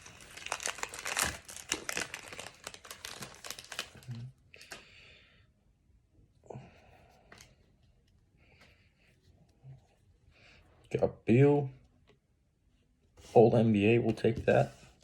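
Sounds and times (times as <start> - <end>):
plastic wrapper crinkling and tearing: 0.0 - 4.8.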